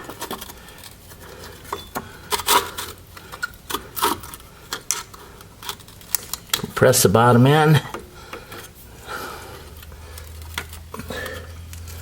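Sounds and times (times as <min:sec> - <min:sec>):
metal clicks and scrapes: 0:00.0 - 0:06.9, 0:09.7 - 0:12.0.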